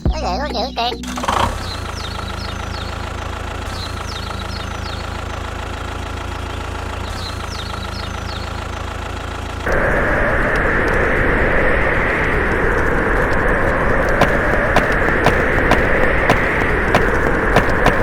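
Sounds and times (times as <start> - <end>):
engine idling with knocking beat: 1.7 - 9.6, 14.2 - 18.0.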